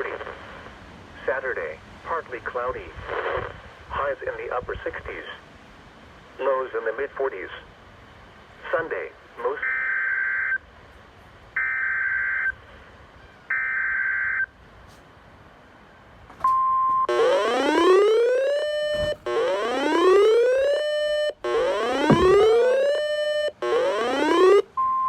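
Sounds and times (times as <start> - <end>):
short steady beep: 16.5 - 17.2, 18.6 - 23.5, 24.4 - 25.0
rising siren-like alert tone: 17.1 - 24.8.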